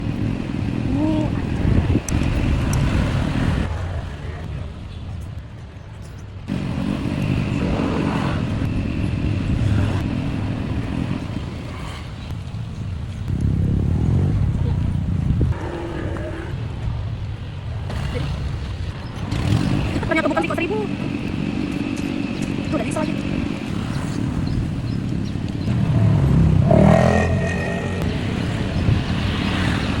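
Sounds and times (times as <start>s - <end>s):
motorcycle engine rumble: 0.0s - 30.0s
vehicle engine passing by: 25.6s - 30.0s.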